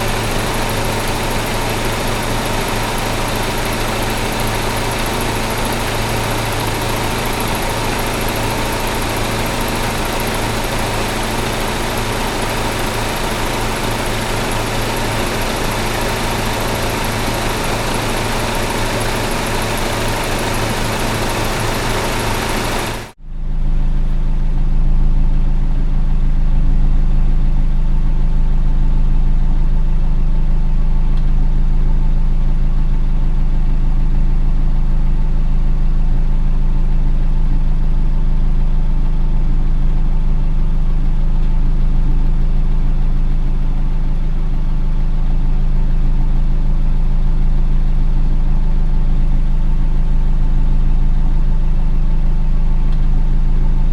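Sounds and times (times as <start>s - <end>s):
car engine running with hiss: 0.0s - 23.2s
deep car engine idle: 0.0s - 53.9s.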